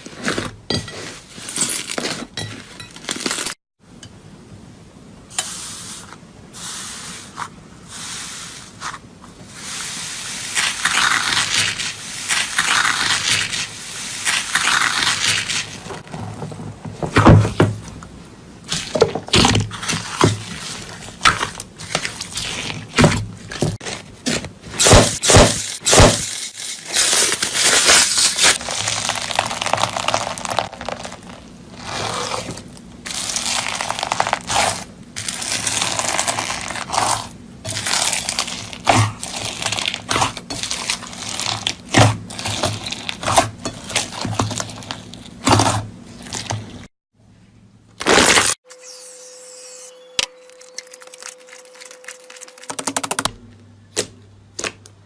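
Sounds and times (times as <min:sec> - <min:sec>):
slime squishing: 0:28.6 - 0:46.8.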